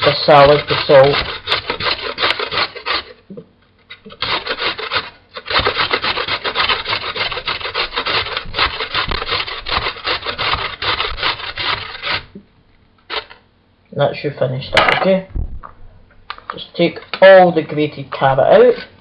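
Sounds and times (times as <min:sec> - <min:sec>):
carrot rasping on grater: 0:00.0 - 0:03.3, 0:03.9 - 0:12.4, 0:13.1 - 0:13.4.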